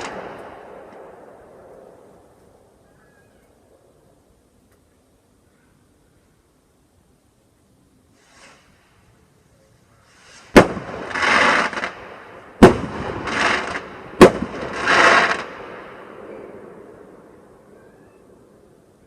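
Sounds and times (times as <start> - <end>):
fireworks exploding: 0.0 - 2.4, 8.2 - 8.8, 10.0 - 17.6
crackling hiss: 0.0 - 19.0.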